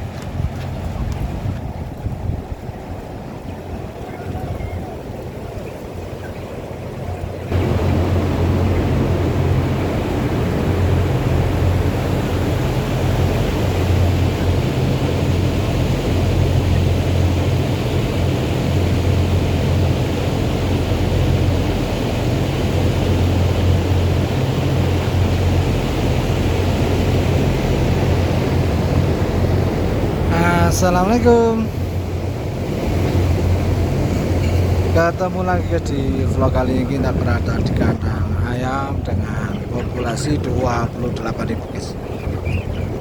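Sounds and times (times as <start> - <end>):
machinery droning: 2.4 - 43.0.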